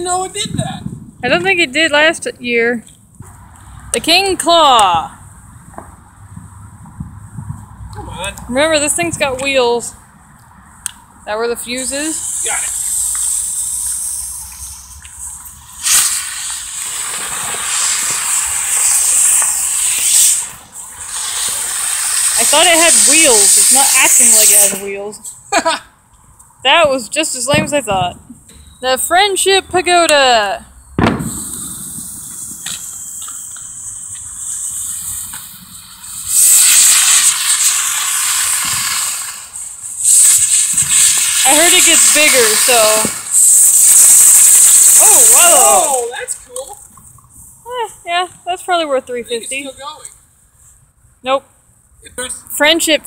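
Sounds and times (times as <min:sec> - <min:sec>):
firework spraying sparks hissing: 0:10.8 - 0:25.5, 0:31.0 - 0:46.8
fuse hissing: 0:11.8 - 0:25.0, 0:31.1 - 0:46.2.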